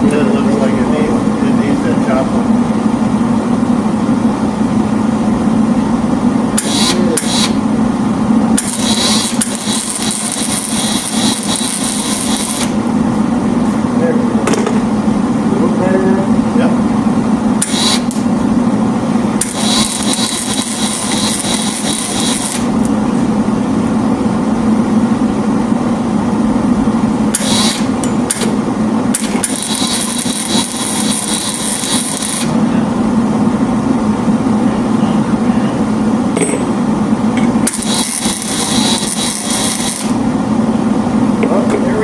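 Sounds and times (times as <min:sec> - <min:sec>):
welding arc crackling: 0:06.5 - 0:07.8, 0:08.5 - 0:13.2, 0:17.5 - 0:23.2, 0:27.2 - 0:32.6, 0:37.6 - 0:40.6.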